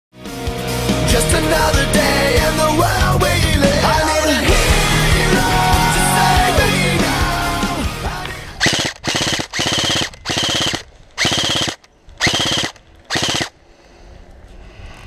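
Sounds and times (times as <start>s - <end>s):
gearbox whine: 2.4s - 13.6s
airsoft gun firing bursts: 8.6s - 13.6s.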